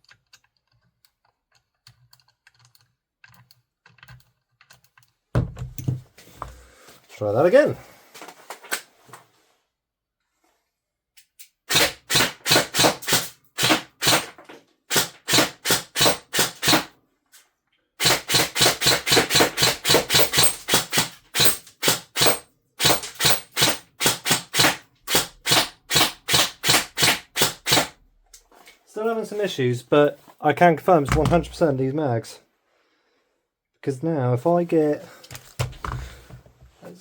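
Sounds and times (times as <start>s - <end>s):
airsoft gun firing single shots: 11.7s - 14.3s, 18.0s - 28.0s.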